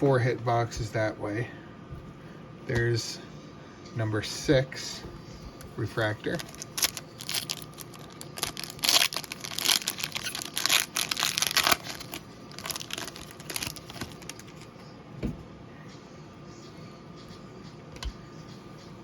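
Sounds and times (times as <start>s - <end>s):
foil wrapper crinkling and tearing: 6.2s - 14.7s
cards rustling: 6.3s - 14.7s.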